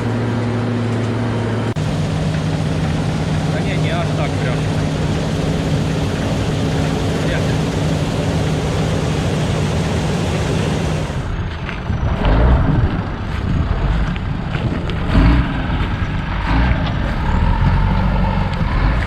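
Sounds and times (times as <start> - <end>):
combine harvester engine humming: 1.6 - 11.4
wind-like noise: 1.8 - 15.2.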